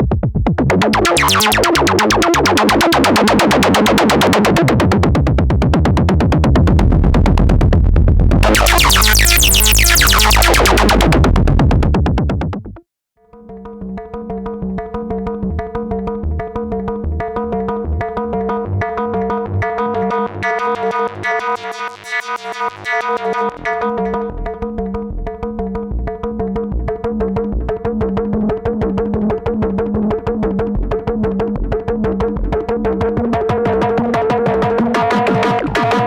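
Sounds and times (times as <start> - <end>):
harsh pulsing synthesizer tone: 0.7 - 5.2, 8.4 - 11.8
low synthesizer drone: 0.7 - 5.2, 8.2 - 11.9.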